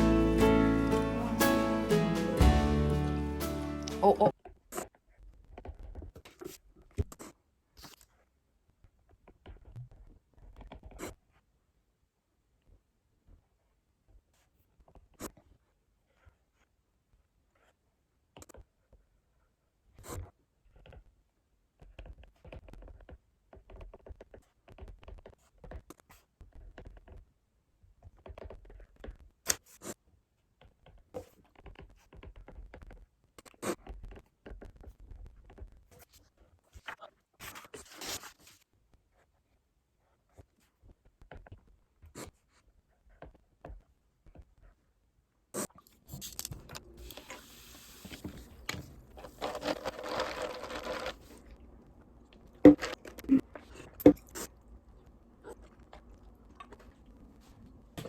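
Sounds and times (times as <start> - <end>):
small things being handled: 45.9 - 51.6.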